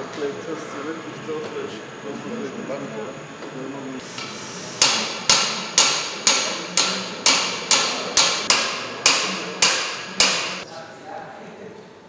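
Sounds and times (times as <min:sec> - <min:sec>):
hammer striking metal: 0:04.2 - 0:10.6.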